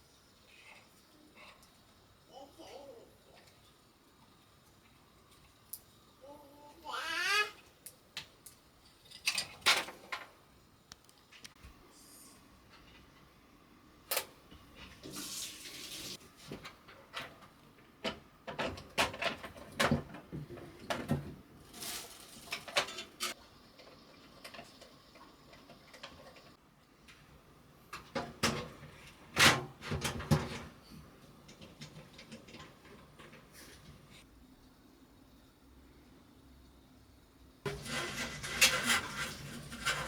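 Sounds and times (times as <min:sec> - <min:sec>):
rustling or sliding: 0:15.0 - 0:16.6, 0:21.6 - 0:23.0, 0:37.7 - 0:40.0
clicks and knocks of plastic and metal: 0:16.5 - 0:21.4.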